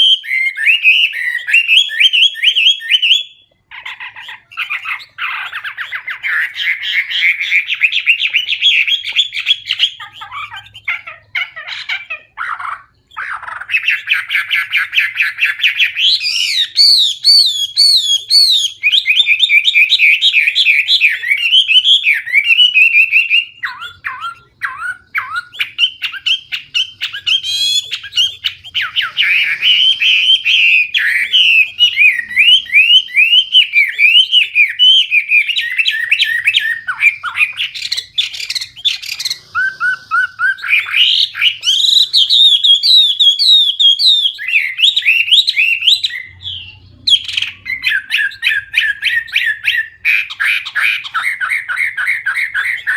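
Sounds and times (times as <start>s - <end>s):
bird singing whistled phrases: 0.0s - 52.9s.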